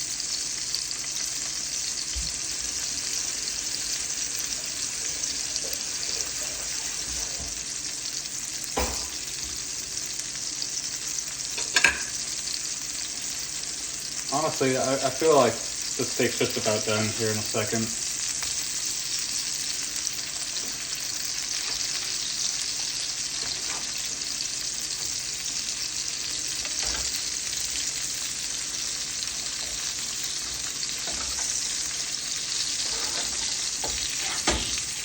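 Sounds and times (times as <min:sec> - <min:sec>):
steak sizzling in a frying pan: 0:00.0 - 0:35.0.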